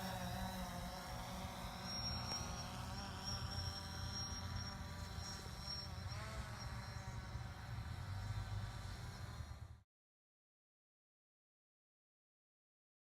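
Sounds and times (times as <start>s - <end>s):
drone propellers buzzing: 0.0s - 9.8s.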